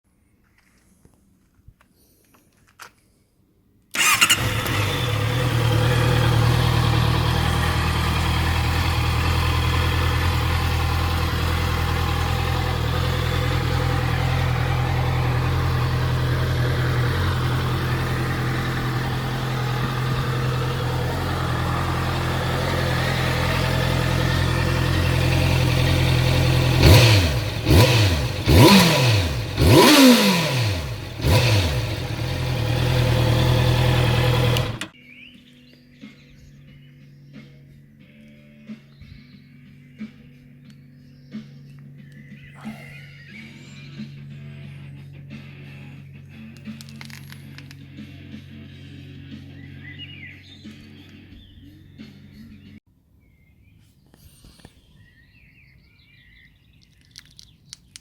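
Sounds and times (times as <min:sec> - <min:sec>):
motorcycle engine revving: 0:03.9 - 0:35.0
motorcycle engine starting and idling: 0:03.9 - 0:35.0, 0:43.2 - 0:51.3.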